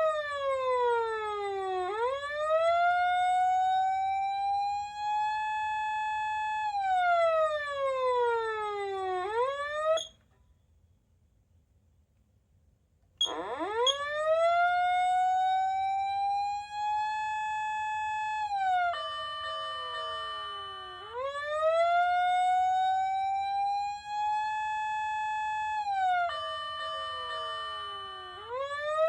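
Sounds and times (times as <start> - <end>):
electronic siren wailing: 6.6 - 10.1, 13.2 - 29.0.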